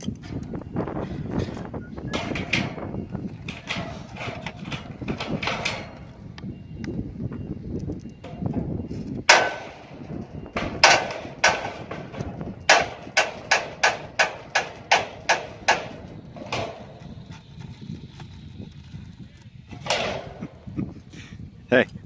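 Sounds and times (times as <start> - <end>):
hammer striking wedges: 9.3 - 17.1.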